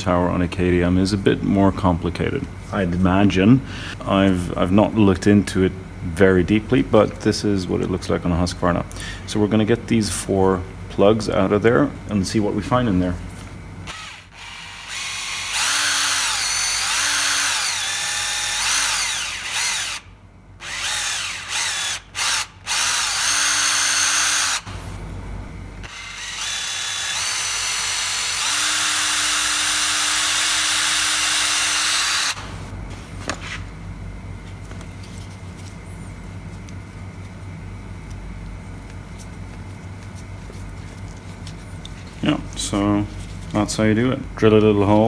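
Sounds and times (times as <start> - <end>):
power drill boring into rubber: 13.9 - 24.7, 25.8 - 32.4.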